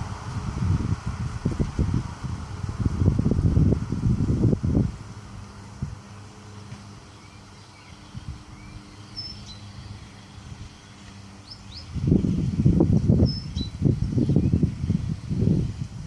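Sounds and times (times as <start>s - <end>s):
lawn mower running: 0.0s - 16.0s
loud low rumbling: 0.0s - 16.0s
small birds chirping: 6.0s - 15.9s.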